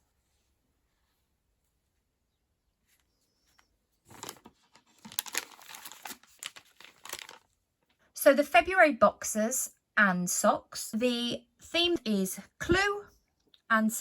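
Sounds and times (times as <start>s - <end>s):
packaging crinkling: 4.1s - 7.6s.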